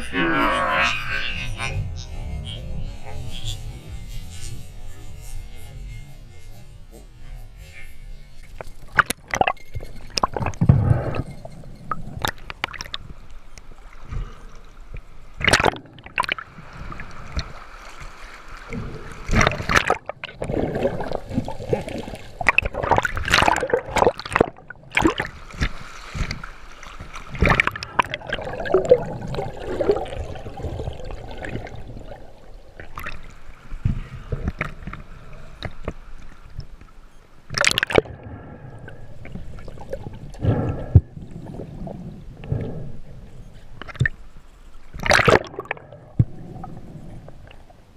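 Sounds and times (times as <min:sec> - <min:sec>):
sharp knocks and splashes: 0:15.4 - 0:32.1, 0:37.5 - 0:38.2, 0:45.0 - 0:46.4
river water gurgling: 0:15.4 - 0:33.8.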